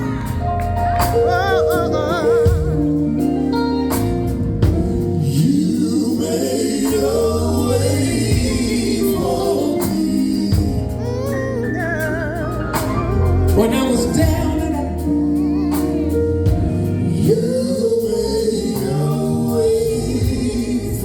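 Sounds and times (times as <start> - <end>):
band with drums playing: 0.0 - 5.5, 6.9 - 17.4
male vocal harmonies: 0.0 - 21.0
solo voice singing: 1.0 - 4.1, 4.7 - 21.0.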